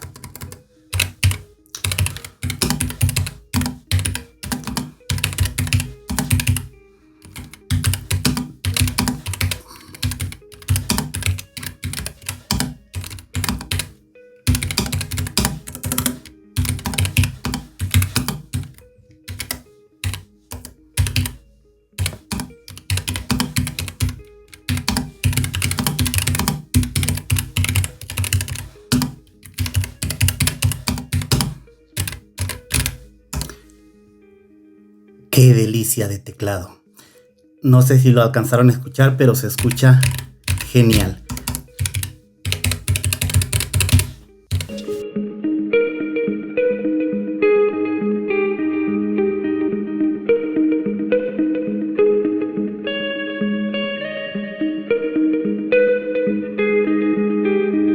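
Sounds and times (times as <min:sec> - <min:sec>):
mechanical keyboard typing: 0:00.0 - 0:21.4, 0:22.0 - 0:33.6, 0:39.2 - 0:45.0.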